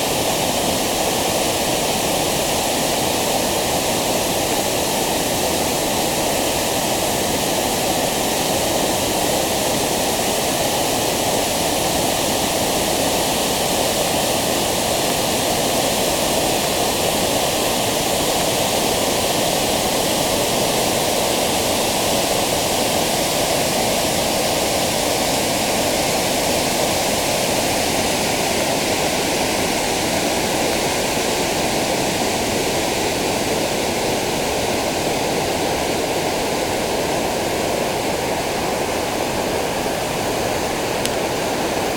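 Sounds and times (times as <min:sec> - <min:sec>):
waterfall rushing: 0:00.0 - 0:41.9.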